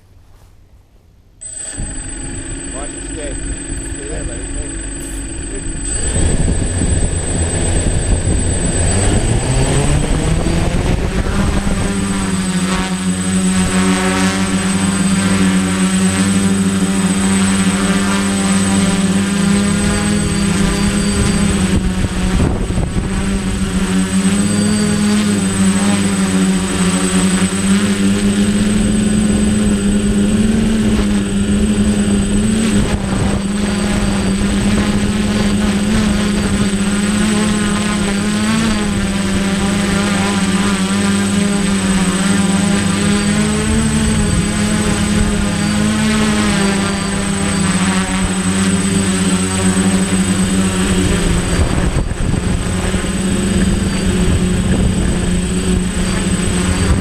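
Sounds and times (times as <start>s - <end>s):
quadcopter propellers buzzing: 1.4s - 57.0s
wind rumble: 1.7s - 12.5s.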